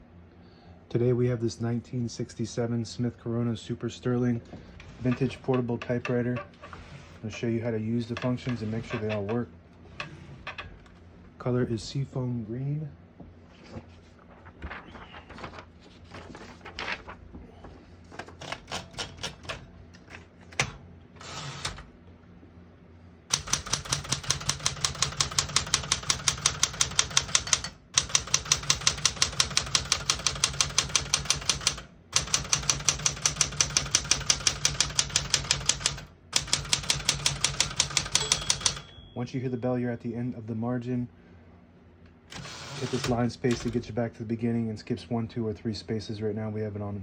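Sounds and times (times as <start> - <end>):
typewriter keys striking: 18.3 - 19.6, 23.3 - 38.9.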